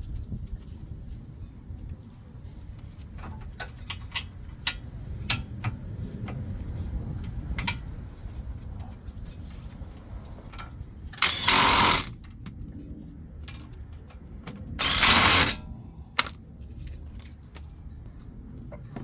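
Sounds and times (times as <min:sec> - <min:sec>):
power tool bursts: 0:11.2 - 0:12.1, 0:14.8 - 0:15.6.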